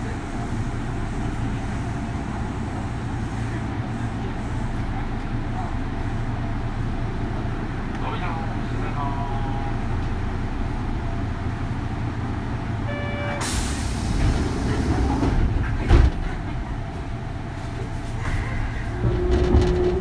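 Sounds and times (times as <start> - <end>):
train interior rumble: 0.0 - 20.0
loud clunk: 18.3 - 20.0.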